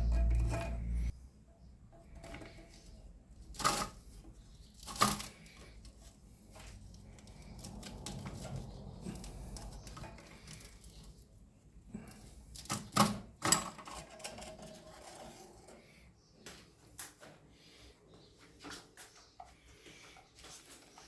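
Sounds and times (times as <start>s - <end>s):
hard objects clicking and knocking: 1.9s - 5.9s, 12.0s - 15.8s.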